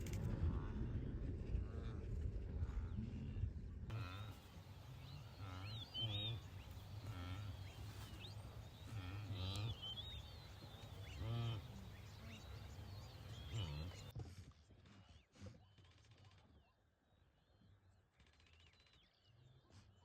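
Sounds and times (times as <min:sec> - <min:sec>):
animal calls: 0:03.9 - 0:14.1
bird chirps: 0:03.9 - 0:14.1.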